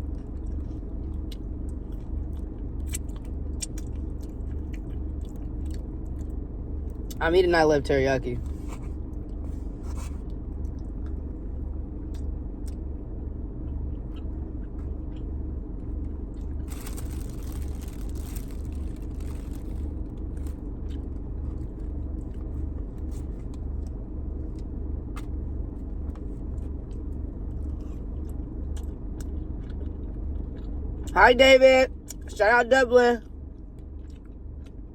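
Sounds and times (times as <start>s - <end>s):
low rumble: 0.0s - 31.2s
person chewing: 0.1s - 6.3s, 13.7s - 23.6s, 26.1s - 31.1s, 34.0s - 34.8s
noisy rustle: 16.7s - 20.6s.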